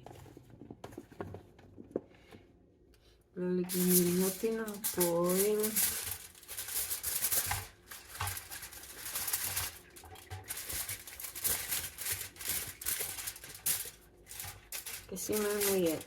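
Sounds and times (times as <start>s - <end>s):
aluminium foil crinkling: 3.6s - 16.0s.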